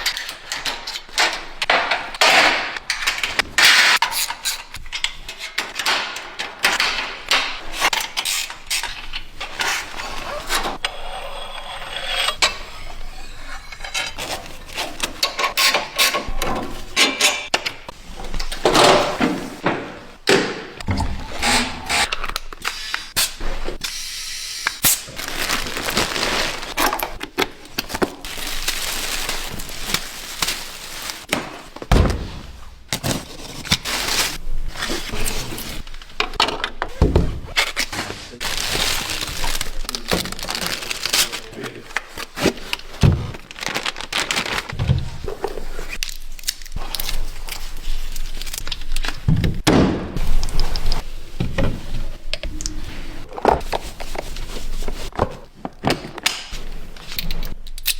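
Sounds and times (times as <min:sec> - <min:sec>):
packaging rustling and crumpling: 0:24.8 - 0:31.9, 0:32.9 - 0:36.2, 0:37.6 - 0:49.3
heavy thump: 0:31.9 - 0:32.7
packaging cracking and snapping: 0:38.4 - 0:44.8, 0:46.0 - 0:49.2.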